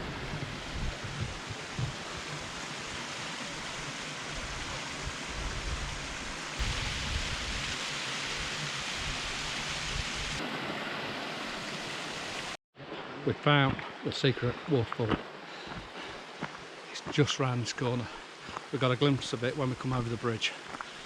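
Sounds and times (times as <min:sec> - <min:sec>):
wind buffeting microphone: 0:00.0 - 0:02.5, 0:04.4 - 0:07.8
rushing water: 0:00.0 - 0:21.0.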